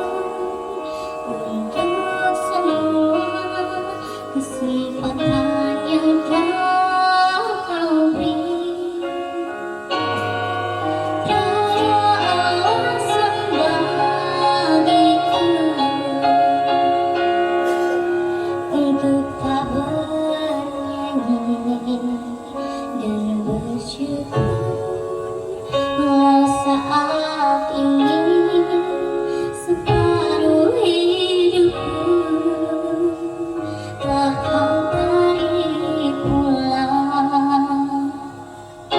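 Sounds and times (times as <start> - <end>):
woman singing: 0.0 - 17.5, 18.5 - 38.9
instrumental accompaniment: 0.0 - 38.9.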